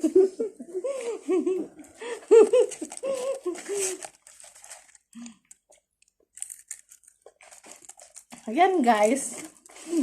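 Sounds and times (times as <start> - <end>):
person laughing: 0.0 - 4.0
wrapping crinkling: 2.0 - 10.0
chewing crunchy food: 2.8 - 8.5.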